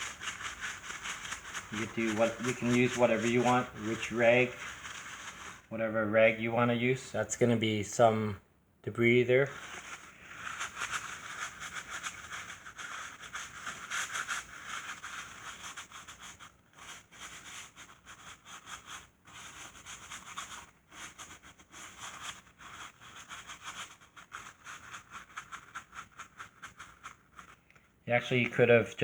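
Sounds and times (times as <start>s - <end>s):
rag scrubbing metal casing: 0.0s - 6.6s.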